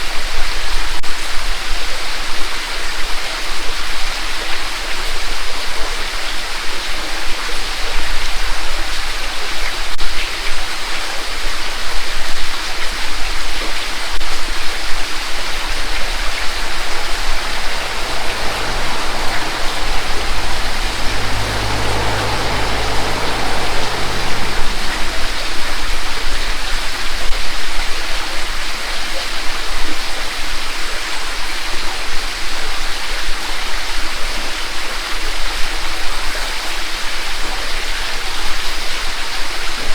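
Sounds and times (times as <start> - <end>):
creek water rushing over rocks: 15.6 - 26.0.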